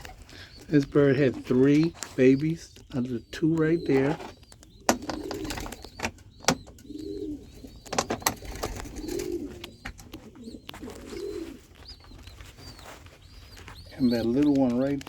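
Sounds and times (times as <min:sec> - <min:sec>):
pigeons cooing: 0:00.0 - 0:15.0
sharp clicks: 0:01.3 - 0:12.4.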